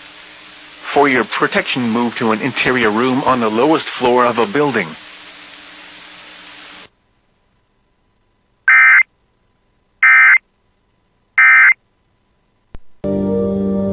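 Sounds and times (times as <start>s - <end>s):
faint radio hiss: 0.0s - 13.0s
digital data tone bursts: 8.7s - 9.1s, 10.0s - 10.4s, 11.4s - 11.8s.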